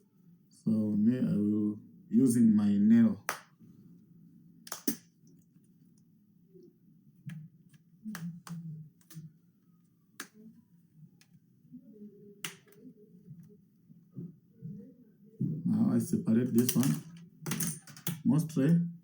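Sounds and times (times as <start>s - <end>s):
plastic clips clicking: 16.6s - 18.2s.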